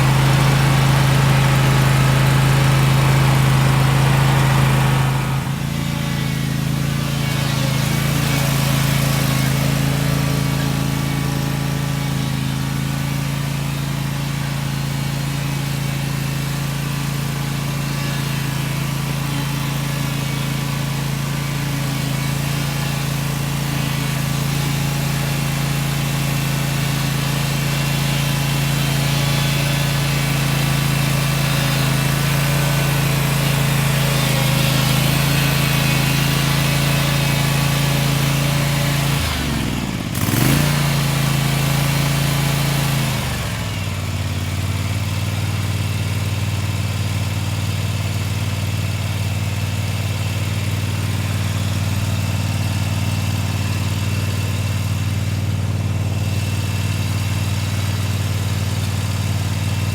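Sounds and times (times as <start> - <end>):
excavator engine running: 0.0 - 44.8.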